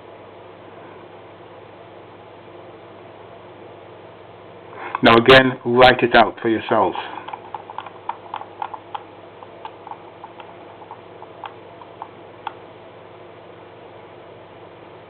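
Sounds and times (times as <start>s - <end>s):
faint steady hum: 0.0s - 15.0s
light irregular clicks: 7.2s - 12.6s.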